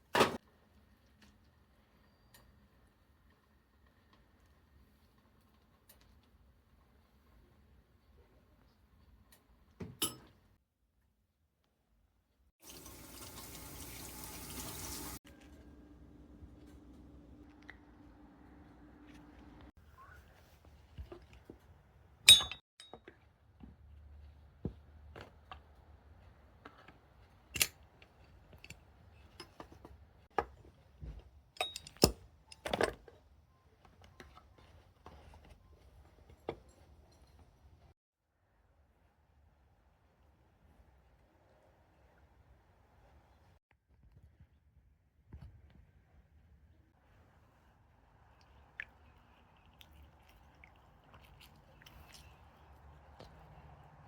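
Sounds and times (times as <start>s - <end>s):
water running from a tap: 12.6s - 15.2s.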